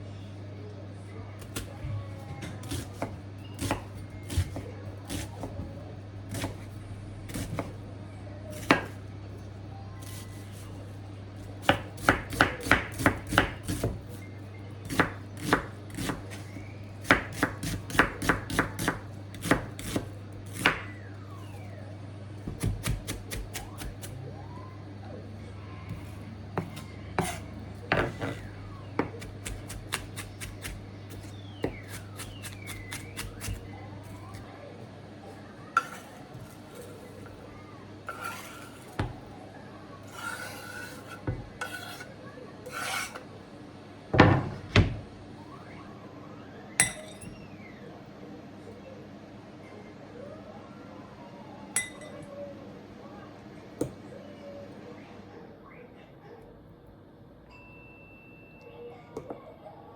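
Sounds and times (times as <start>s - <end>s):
knife chopping on cutting board: 7.3s - 7.7s, 8.5s - 9.0s, 11.6s - 14.1s, 14.8s - 20.9s, 22.4s - 24.1s, 25.9s - 34.2s, 42.7s - 43.2s.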